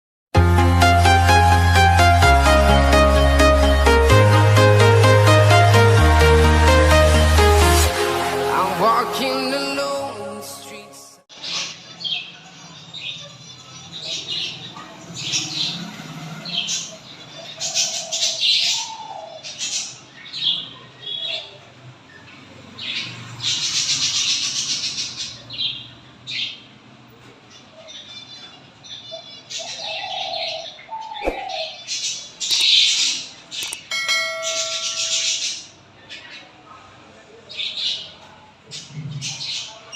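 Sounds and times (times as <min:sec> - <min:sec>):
wings fluttering: 0:31.2 - 0:31.6.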